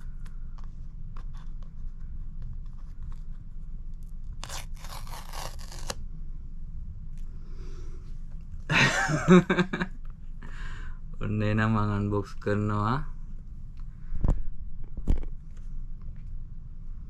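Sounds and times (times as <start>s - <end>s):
paper tab tearing: 4.4s - 6.0s.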